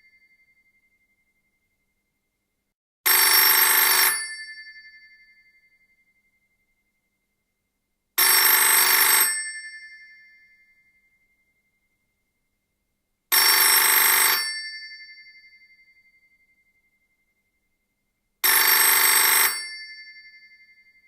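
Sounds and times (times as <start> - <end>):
old telephone bell ringing: 3.1 - 5.8, 8.2 - 10.9, 13.3 - 16.0, 18.4 - 21.0.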